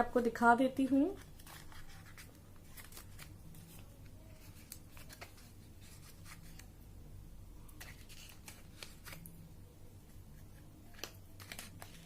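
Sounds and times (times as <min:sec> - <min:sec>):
package clicks and rustles: 0:01.2 - 0:06.7, 0:07.8 - 0:09.3, 0:10.9 - 0:12.0.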